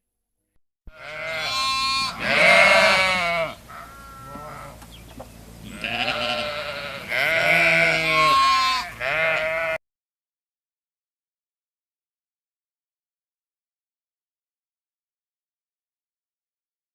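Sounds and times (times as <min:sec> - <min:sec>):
goats or sheep bleating: 0:00.9 - 0:04.8, 0:05.6 - 0:09.8.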